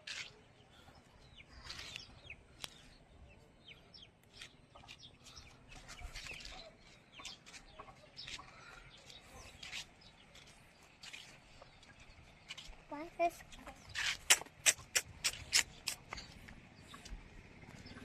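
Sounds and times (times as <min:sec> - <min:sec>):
bird clucks: 0:13.5 - 0:17.2.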